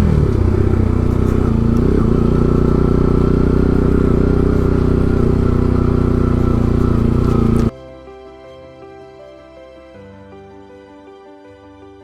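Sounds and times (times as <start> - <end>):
motorcycle engine running: 0.0 - 7.7.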